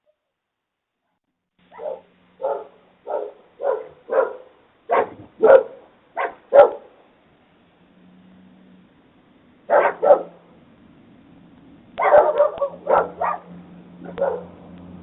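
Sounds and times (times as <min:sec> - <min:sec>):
dog barking: 0:01.7 - 0:07.0, 0:09.7 - 0:10.4, 0:12.0 - 0:14.6.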